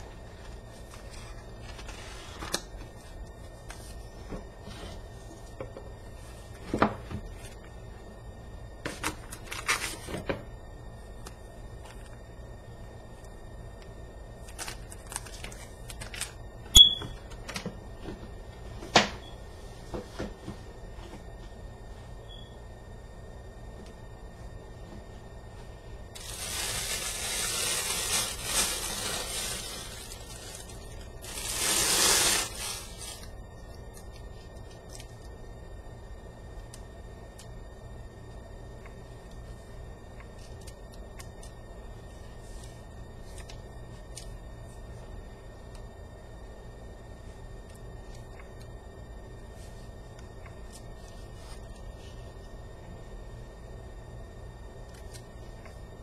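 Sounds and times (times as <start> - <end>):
low steady hum: 0.0 - 56.0
packaging rustling and crinkling: 26.2 - 35.1.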